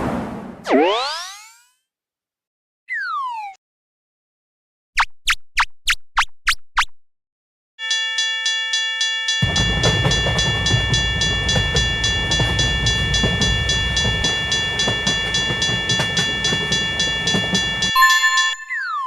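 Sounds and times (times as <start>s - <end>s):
railroad crossing bell ringing: 7.8s - 19.0s
passing train rumble: 9.4s - 18.5s.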